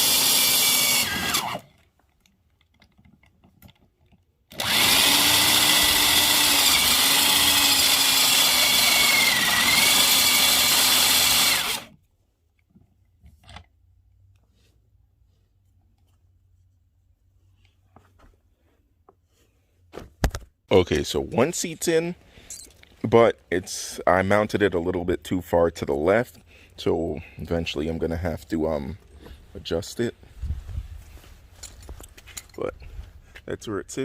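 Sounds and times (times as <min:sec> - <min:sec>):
power drill running: 0:00.0 - 0:01.8, 0:04.5 - 0:11.9.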